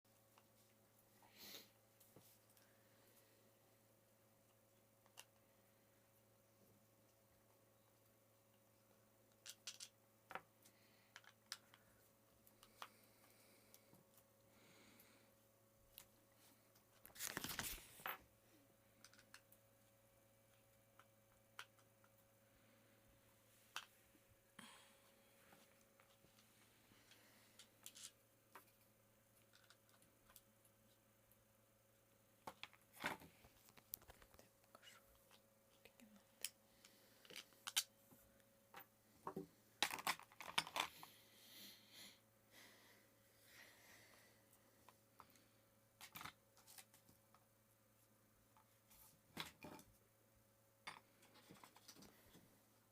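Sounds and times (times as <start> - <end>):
faint steady hum: 0.1 - 52.9
small hard parts clicking: 9.3 - 11.8, 19.0 - 19.5.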